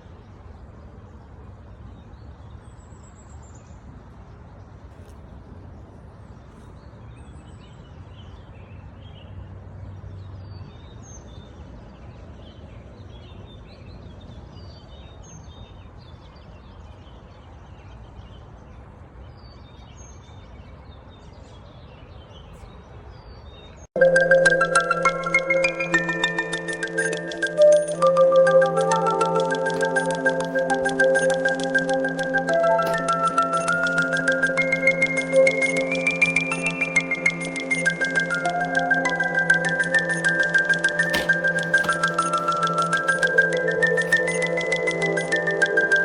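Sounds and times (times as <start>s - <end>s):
small birds chirping: 0.0s - 23.9s, 24.6s - 46.0s
loud marimba music: 24.0s - 46.0s.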